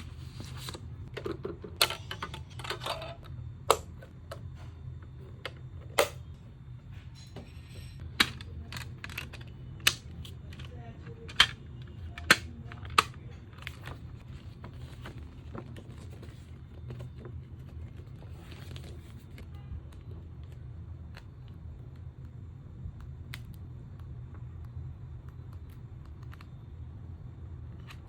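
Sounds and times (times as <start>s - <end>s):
steady low hum: 0.0s - 28.0s
paper and plastic crinkling: 10.2s - 19.5s.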